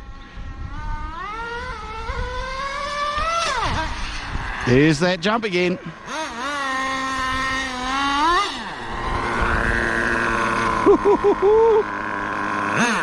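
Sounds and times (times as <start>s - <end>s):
small two-stroke engine revving: 0.0s - 13.0s.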